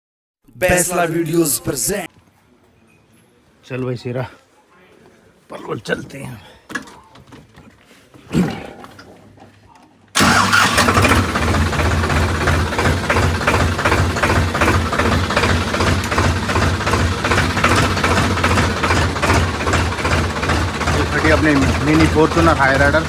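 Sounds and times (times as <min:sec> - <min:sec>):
tractor diesel engine running: 0:10.2 - 0:23.0.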